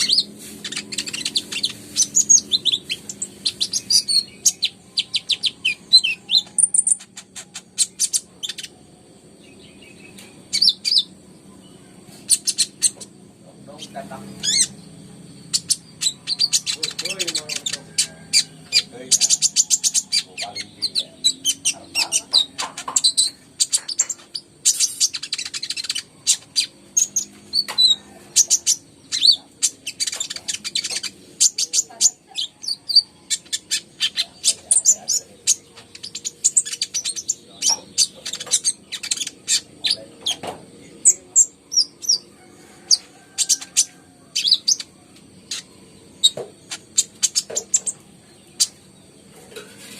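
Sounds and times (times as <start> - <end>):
sunbird chirping and trilling: 0.0 - 49.9.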